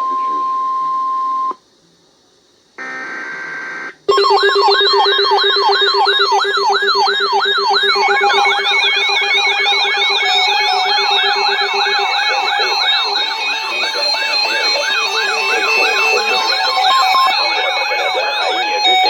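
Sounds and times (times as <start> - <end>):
steady alert tone: 4.1 - 17.3
synthesized siren-like alarm: 4.1 - 19.0.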